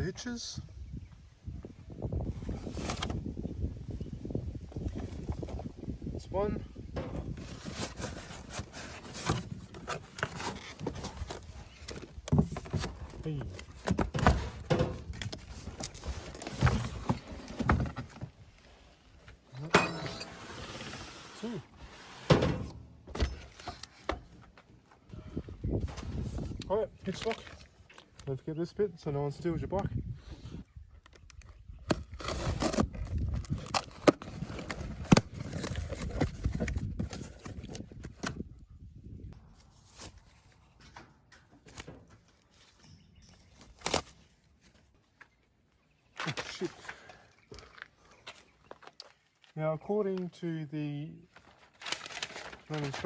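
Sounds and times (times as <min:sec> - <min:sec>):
bike carrier parts clunking: 0:06.8 - 0:07.7, 0:09.4 - 0:18.4, 0:19.6 - 0:20.9, 0:22.1 - 0:24.5
plastic crinkling and scraping: 0:07.0 - 0:19.2, 0:32.2 - 0:38.2, 0:51.3 - 0:53.0.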